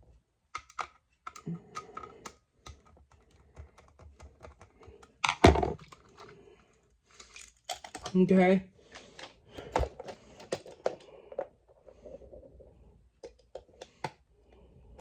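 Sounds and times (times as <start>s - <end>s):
plastic toy clicks and taps: 0.6s - 6.0s.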